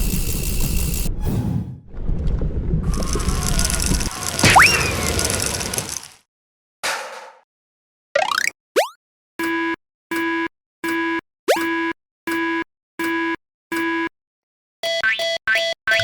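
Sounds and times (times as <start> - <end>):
rising cartoon whistle slides: 2.9 - 6.0.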